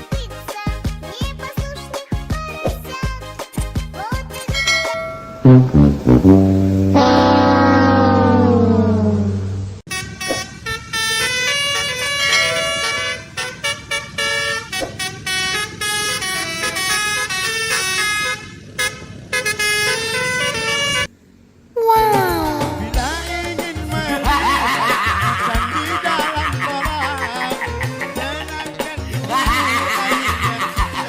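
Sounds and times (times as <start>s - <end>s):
falling tone: 4.6s - 9.8s
multi-tone bus horn tune: 4.7s - 21.1s.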